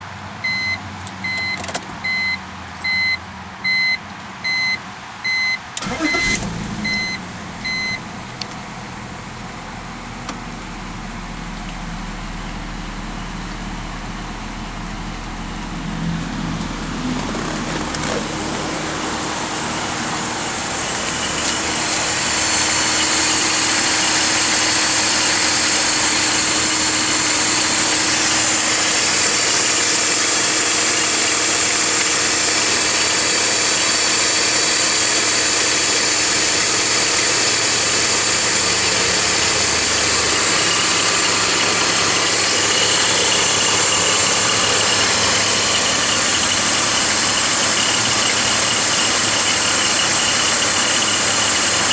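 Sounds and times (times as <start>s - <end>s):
car engine idling: 5.8s - 51.9s
belt drive rattle and whirring: 16.4s - 51.9s.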